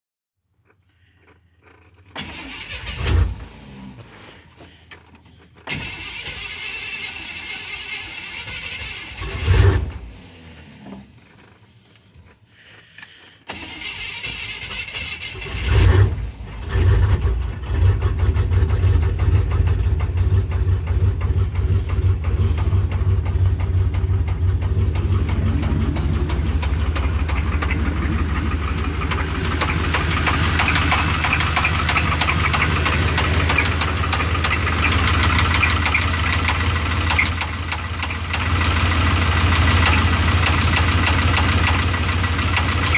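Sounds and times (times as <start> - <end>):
engine cranking and starting: 0.9 - 42.9
engine knocking: 16.7 - 42.9.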